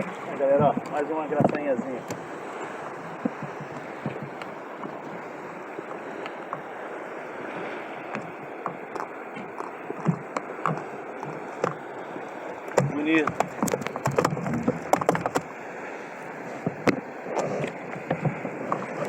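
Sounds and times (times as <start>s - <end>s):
sea water washing around kayak: 0.0s - 19.0s
light knocks and clicks: 0.6s - 2.2s.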